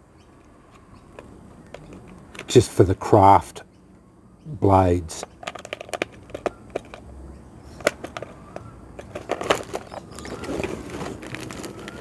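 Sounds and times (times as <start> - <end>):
tools clicking and knocking: 5.2 - 7.1, 7.8 - 10.2.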